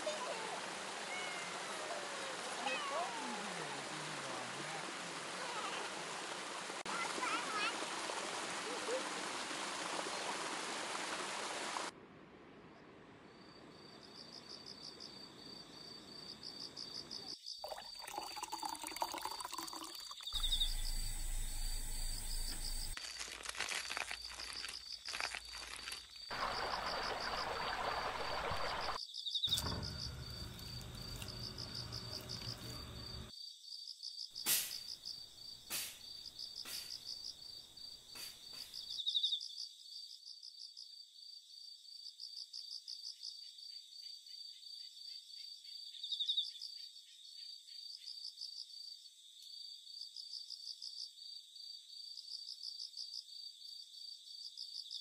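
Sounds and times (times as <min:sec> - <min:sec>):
stream water running: 0:00.0 - 0:11.9, 0:17.6 - 0:33.3, 0:35.7 - 0:37.1, 0:38.1 - 0:38.8
insects chirping: 0:13.3 - 0:55.0.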